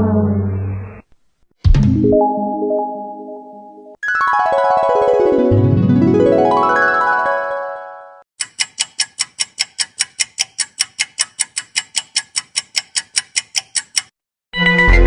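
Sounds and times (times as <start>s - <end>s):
fast clock ticking: 8.4s - 14.1s.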